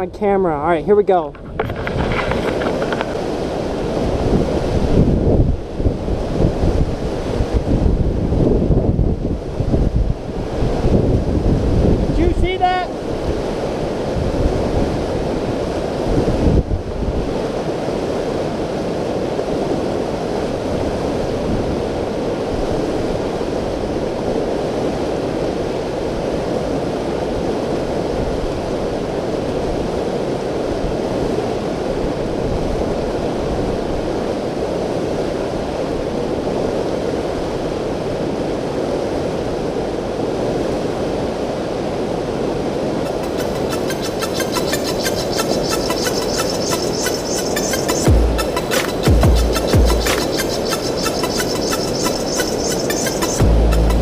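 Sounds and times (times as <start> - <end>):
wind buffeting microphone: 1.0 - 17.8.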